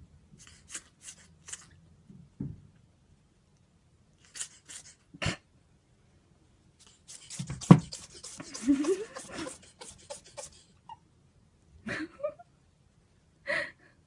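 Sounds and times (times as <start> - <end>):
ferret sneezing: 4.3 - 5.4, 6.8 - 10.8.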